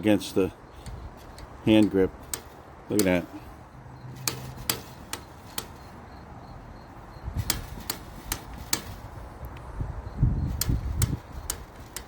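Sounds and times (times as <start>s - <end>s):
handling noise: 0.7s - 6.2s, 7.4s - 9.4s
bicycle brake clicks: 4.2s - 5.8s, 7.4s - 9.6s, 10.4s - 12.0s.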